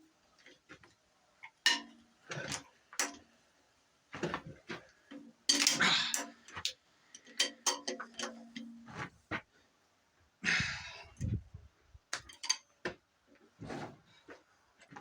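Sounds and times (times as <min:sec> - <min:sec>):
hand tools clinking on engine: 0:05.5 - 0:08.8.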